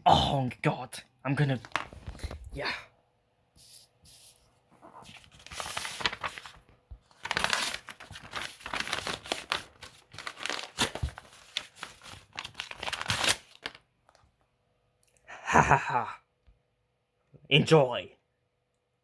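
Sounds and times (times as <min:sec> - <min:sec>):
plastic crinkling and rustling: 0:01.6 - 0:02.5, 0:04.9 - 0:14.3.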